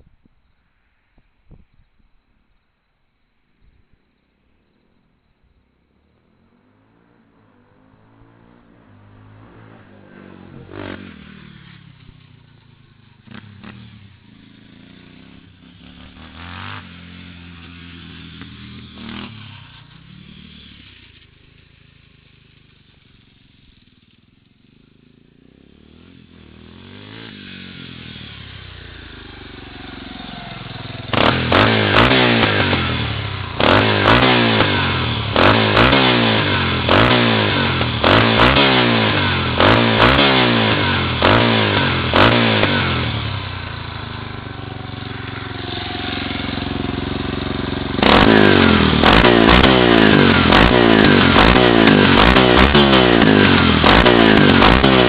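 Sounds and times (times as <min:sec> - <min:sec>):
four-wheeler engine revving: 0:06.5 - 0:23.9, 0:24.8 - 0:55.0.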